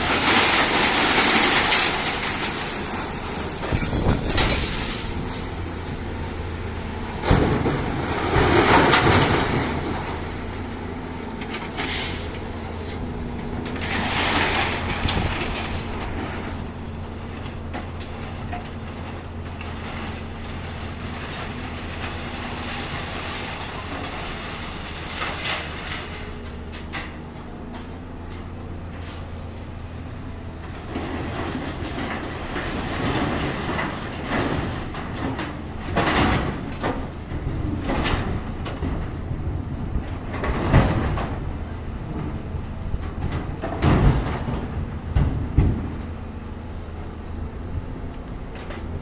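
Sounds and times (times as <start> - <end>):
scraping and clattering: 0.0 - 6.5, 13.6 - 16.7
diesel engine running: 0.0 - 49.0
metal clanks and knocks: 17.3 - 20.8, 43.0 - 46.1.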